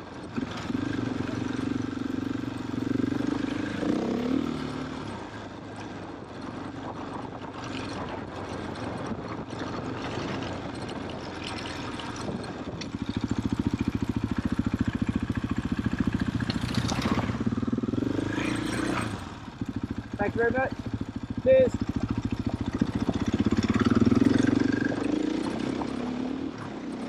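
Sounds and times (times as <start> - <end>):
motorcycle engine idling: 11.4 - 18.1, 19.4 - 25.2.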